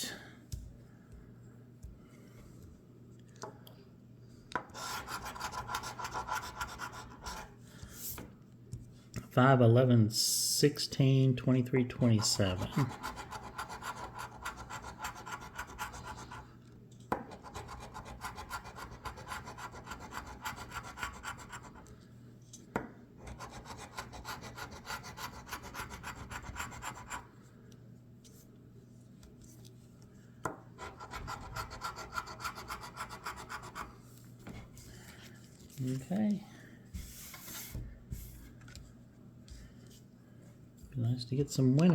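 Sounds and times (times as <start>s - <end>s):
scratch card being scraped: 4.7s - 7.5s, 12.6s - 16.4s, 17.3s - 21.9s, 23.2s - 27.2s, 30.8s - 33.9s.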